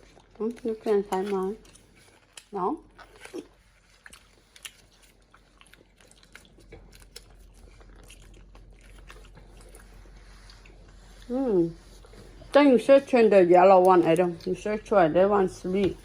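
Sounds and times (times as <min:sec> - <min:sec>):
person chewing candy: 0:00.0 - 0:11.3.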